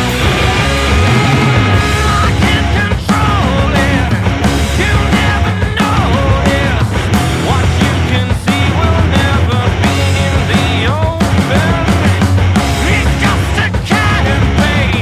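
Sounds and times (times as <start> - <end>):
loud rock music with vocals: 0.0 - 15.0.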